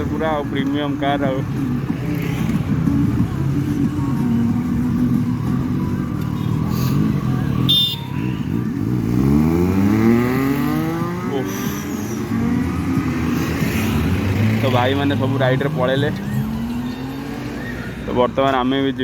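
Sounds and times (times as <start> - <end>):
motorcycle engine accelerating: 8.4 - 18.0.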